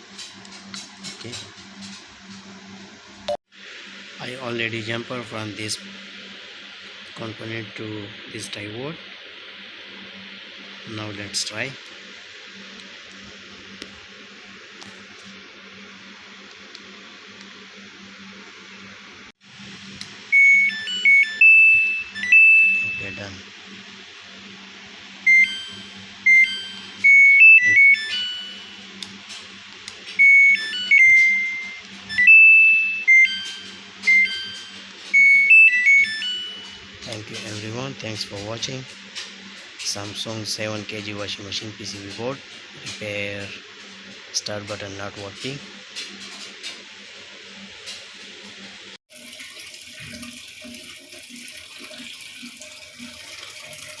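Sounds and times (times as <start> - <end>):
washing machine beeper melody: 20.2 - 23.5, 25.1 - 29.4, 30.0 - 38.8, 49.1 - 54.0.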